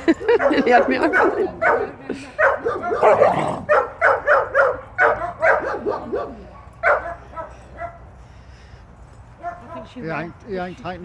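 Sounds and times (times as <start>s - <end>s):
dog barking: 0.3s - 8.1s, 9.4s - 10.0s.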